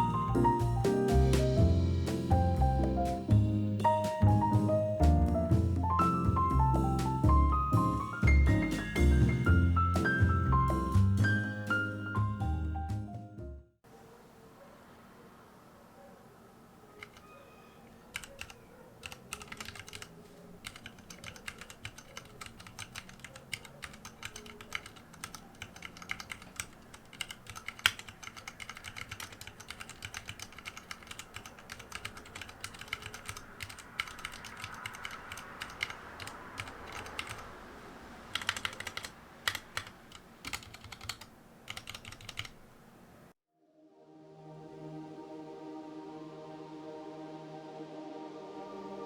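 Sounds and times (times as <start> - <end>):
keyboard key clicks: 18.1 - 37.5, 38.4 - 42.6.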